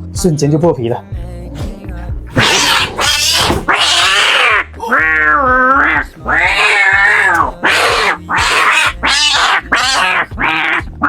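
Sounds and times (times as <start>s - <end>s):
cat yowling angrily: 2.3s - 10.9s.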